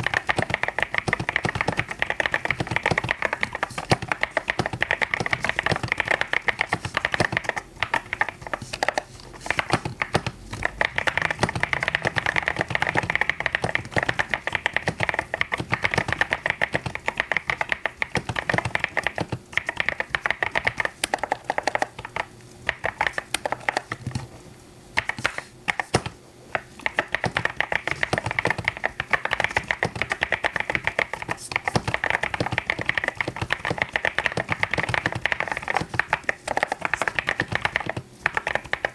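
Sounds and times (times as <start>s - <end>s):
mechanical keyboard typing: 0.0s - 24.3s, 25.0s - 38.9s.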